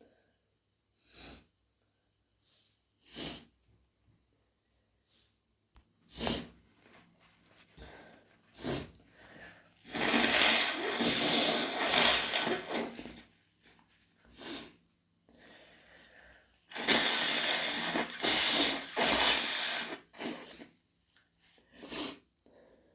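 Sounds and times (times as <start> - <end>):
woman sniffing: 7.8 - 13.2, 16.7 - 20.8, 21.7 - 22.3
woman blowing her nose: 8.6 - 8.9, 9.8 - 13.2, 16.7 - 20.8, 21.8 - 22.3.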